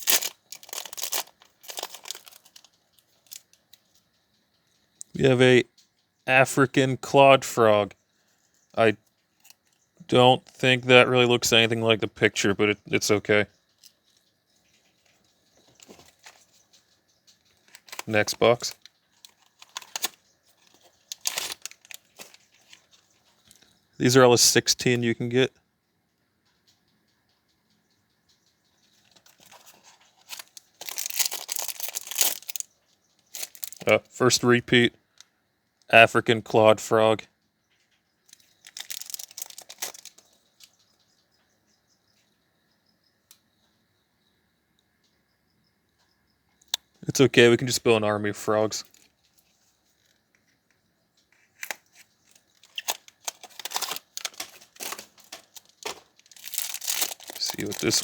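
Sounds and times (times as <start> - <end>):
plastic wrapper crinkling: 0.0 - 4.0, 14.7 - 16.7, 17.5 - 23.5, 29.0 - 34.0, 38.3 - 40.7, 51.4 - 58.0.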